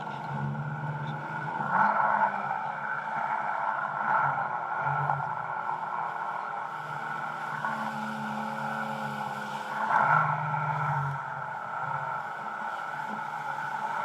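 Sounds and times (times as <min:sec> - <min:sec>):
jet ski engine running: 0:05.7 - 0:14.0.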